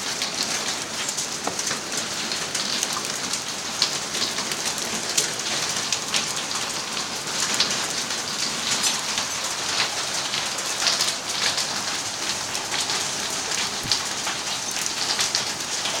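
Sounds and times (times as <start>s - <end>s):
rain hissing: 0.0s - 16.0s
hailstones striking: 10.9s - 16.0s.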